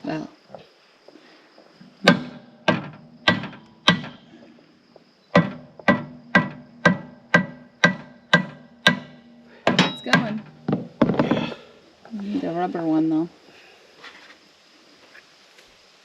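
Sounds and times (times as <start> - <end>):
hammer striking metal: 2.0 - 4.3, 5.4 - 10.8.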